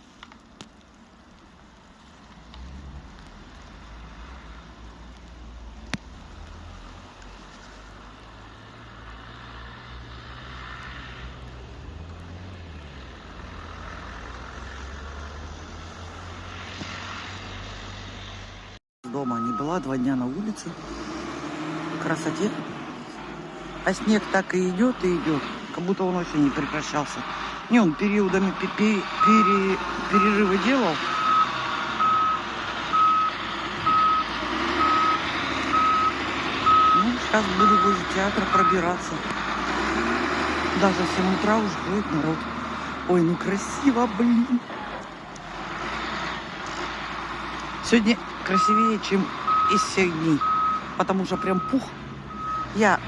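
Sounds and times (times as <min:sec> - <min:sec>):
car engine hum: 0:00.0 - 0:53.0
tyre and road noise: 0:00.0 - 0:53.0
reversing alarm beeping: 0:19.1 - 0:20.0, 0:29.2 - 0:39.0, 0:48.5 - 0:52.8.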